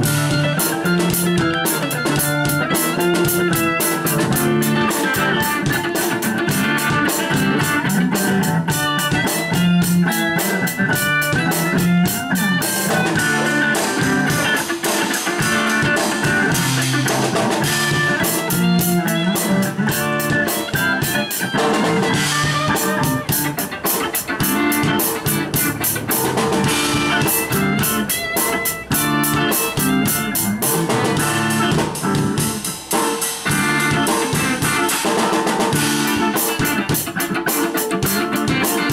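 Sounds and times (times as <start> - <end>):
drum kit fast beat: 0.0 - 38.9
guitar: 0.0 - 38.9.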